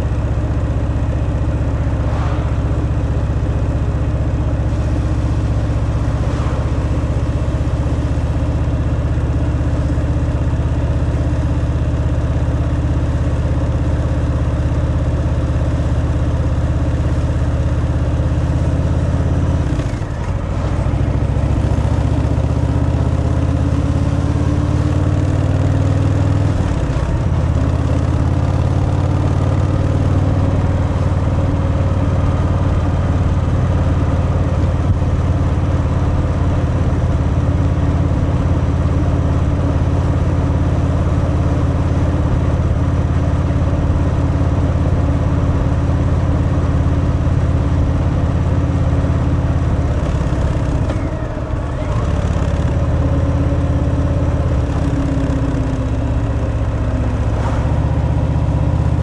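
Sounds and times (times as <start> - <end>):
motorcycle engine running: 0.0 - 59.0.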